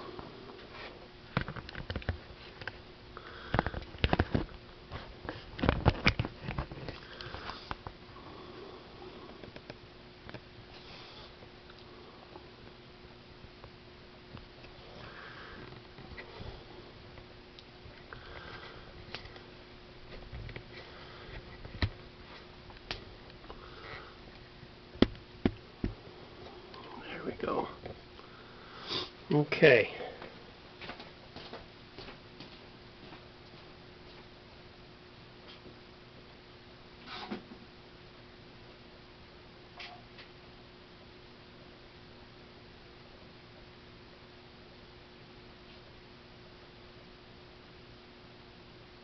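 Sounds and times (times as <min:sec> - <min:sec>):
faint air hisses: 0:26.0 - 0:30.4.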